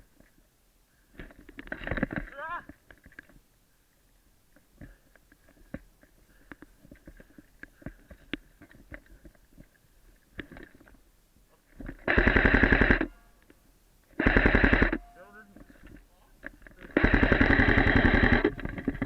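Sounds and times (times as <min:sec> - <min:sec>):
faint clicks: 0:01.1 - 0:11.0
airsoft gun full-auto burst: 0:12.0 - 0:13.1, 0:14.2 - 0:15.1, 0:16.9 - 0:19.0.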